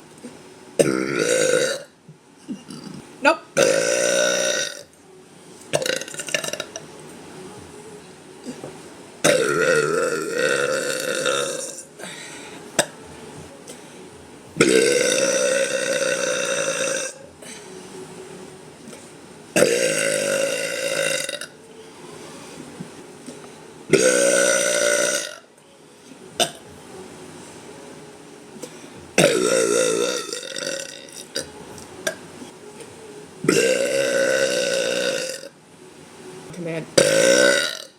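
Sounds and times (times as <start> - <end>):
woman burping loudly: 0.8 - 4.9, 5.7 - 6.8, 9.2 - 12.9, 14.6 - 17.3, 19.6 - 21.6, 23.9 - 25.5, 26.4 - 26.6, 29.2 - 32.2, 33.5 - 35.6, 37.0 - 37.9.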